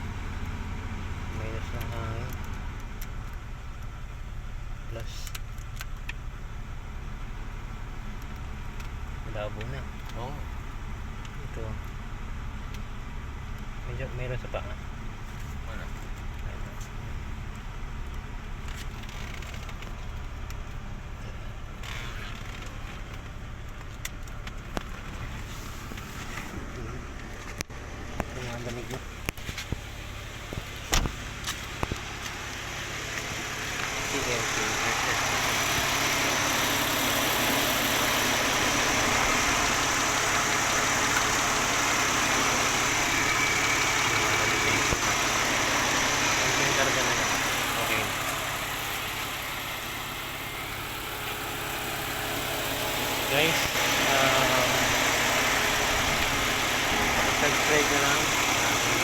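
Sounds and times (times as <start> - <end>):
car engine idling: 0.0 - 59.0
air conditioning running: 19.6 - 59.0.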